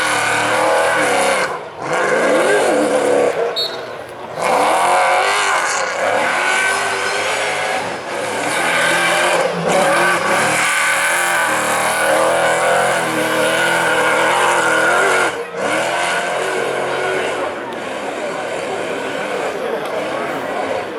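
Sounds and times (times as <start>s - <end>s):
rally car engine revving hard: 0.0s - 20.9s.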